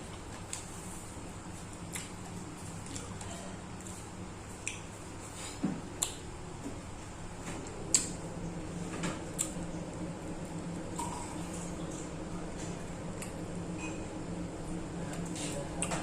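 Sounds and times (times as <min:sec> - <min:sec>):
steady low hum: 0:00.0 - 0:16.0
eating clicks and smacks: 0:01.8 - 0:02.2, 0:04.6 - 0:04.9, 0:06.0 - 0:06.2, 0:07.6 - 0:08.2, 0:09.3 - 0:09.7.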